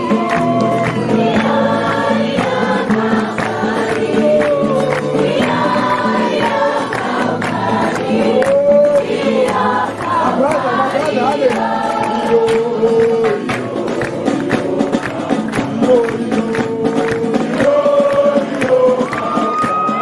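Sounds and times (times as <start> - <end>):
group singing in chorus: 0.0 - 20.0
steady percussive beat: 0.0 - 20.0.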